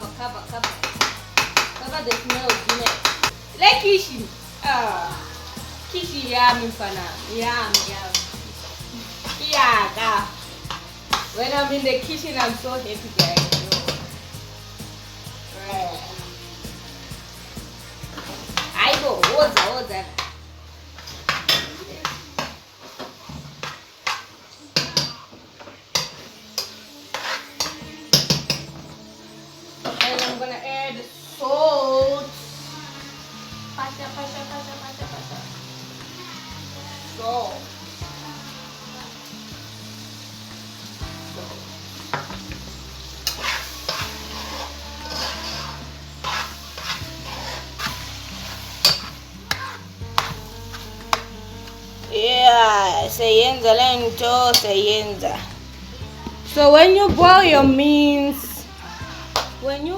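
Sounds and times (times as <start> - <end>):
food sizzling: 0.0 - 59.9
utensil scraping cooking pot: 4.6 - 14.8, 15.5 - 20.4, 26.0 - 28.8, 43.0 - 52.4
spoon scraping a pot: 26.0 - 28.8, 43.2 - 51.2.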